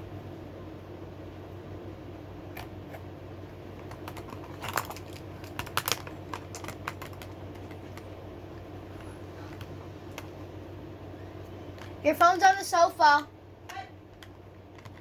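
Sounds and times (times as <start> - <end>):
low room hum: 0.0 - 15.0
fidget toys clicking and tapping: 3.8 - 8.2.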